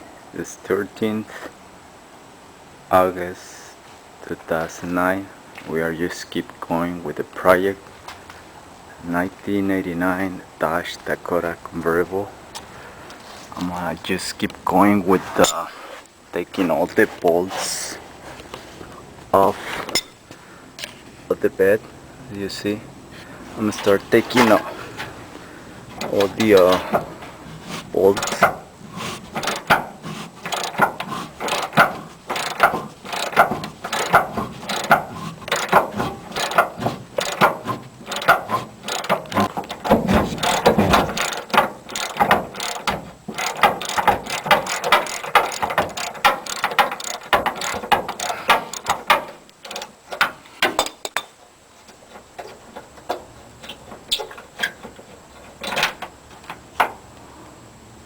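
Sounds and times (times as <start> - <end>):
ratchet wrench clicking: 29.4 - 29.8, 30.4 - 50.2.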